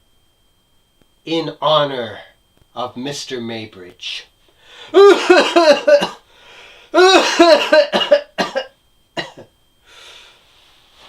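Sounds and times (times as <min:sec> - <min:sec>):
people coughing: 0:05.0 - 0:06.2, 0:07.0 - 0:09.5.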